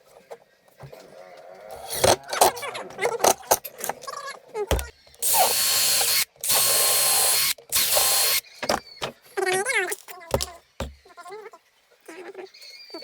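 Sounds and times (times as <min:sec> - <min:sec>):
power drill running: 0:01.8 - 0:02.2, 0:04.7 - 0:09.1
clicks and knocks of wood and tools: 0:07.8 - 0:11.0.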